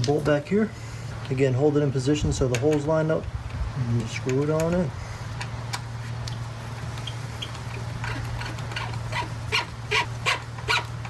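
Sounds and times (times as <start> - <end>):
steady low hum: 0.0 - 11.0
short squeaks of bolt screwing: 7.0 - 10.9.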